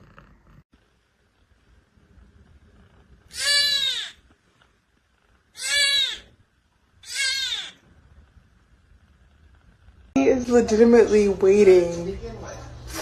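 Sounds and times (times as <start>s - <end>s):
cat meowing loudly: 3.3s - 4.2s, 5.6s - 6.3s, 7.0s - 7.8s.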